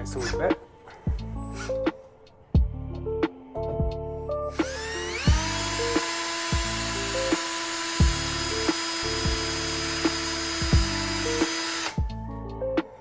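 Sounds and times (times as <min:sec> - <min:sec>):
background music with beat: 0:00.0 - 0:06.7, 0:07.3 - 0:13.0
cordless drill running: 0:04.6 - 0:12.0.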